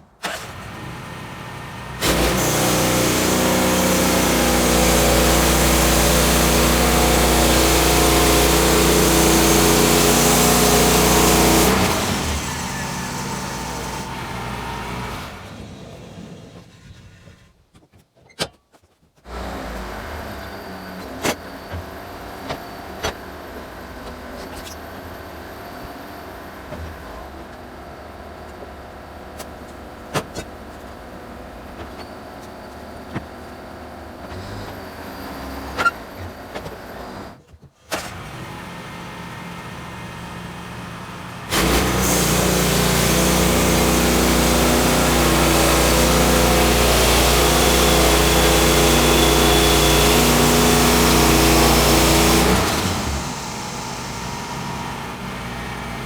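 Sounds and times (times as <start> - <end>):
engine running: 0.2 - 17.5, 38.0 - 56.0.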